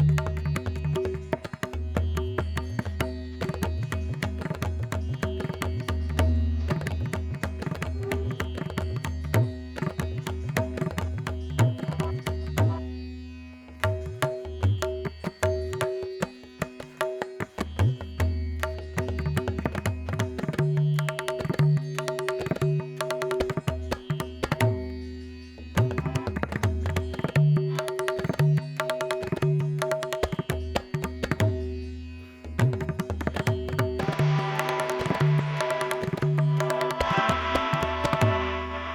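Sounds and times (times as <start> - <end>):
tabla drumming: 0.0 - 13.0, 13.8 - 38.9
steady drone: 34.0 - 38.9.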